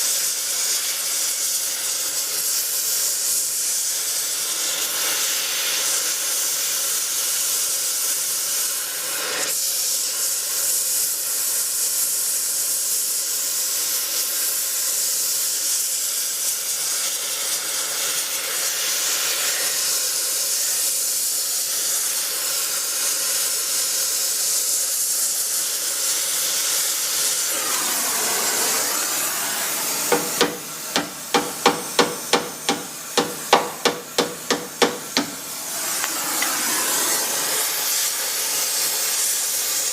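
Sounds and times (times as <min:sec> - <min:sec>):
loud hissing: 0:15.5 - 0:39.9
sharp metallic knocks: 0:30.1 - 0:35.5.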